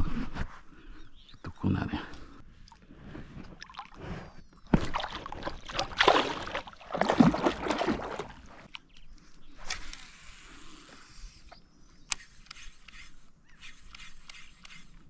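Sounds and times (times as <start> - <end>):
water splashing and sloshing: 2.5 - 8.9.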